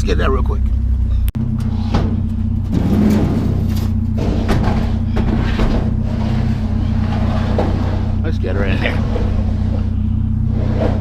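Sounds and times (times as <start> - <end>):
vehicle engine idling: 0.0 - 11.0
knocks and rattles: 1.4 - 10.0.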